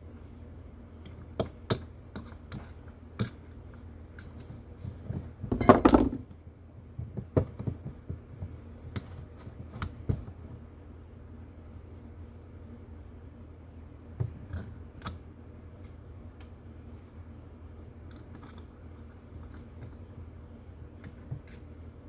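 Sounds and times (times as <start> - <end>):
faint low hum: 0.0 - 22.0
metal parts clicking on workbench: 5.5 - 6.2.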